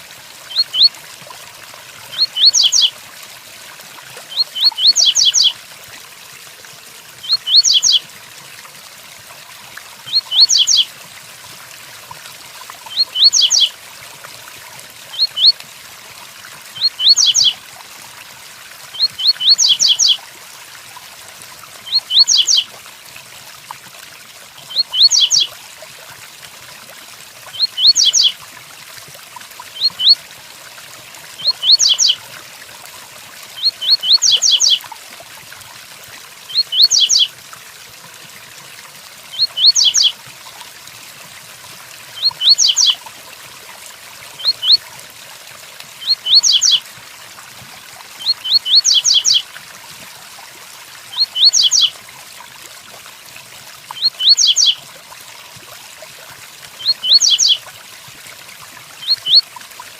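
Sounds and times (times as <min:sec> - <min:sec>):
bird singing short rising phrases: 0:02.1 - 0:02.9, 0:04.3 - 0:05.5, 0:07.2 - 0:08.0, 0:10.1 - 0:10.8, 0:12.9 - 0:13.7, 0:21.9 - 0:22.6, 0:31.4 - 0:32.2, 0:39.4 - 0:40.1, 0:42.2 - 0:43.0, 0:46.0 - 0:46.8, 0:48.2 - 0:49.4, 0:51.2 - 0:51.9, 0:54.0 - 0:54.8.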